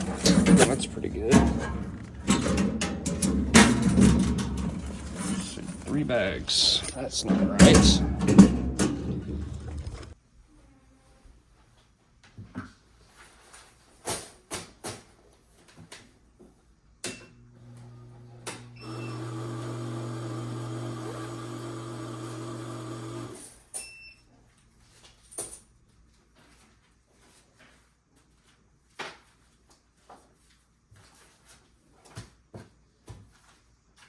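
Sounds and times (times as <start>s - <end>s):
handling clicks and knocks: 0.0s - 10.2s
money counting machine beeps: 18.8s - 24.2s.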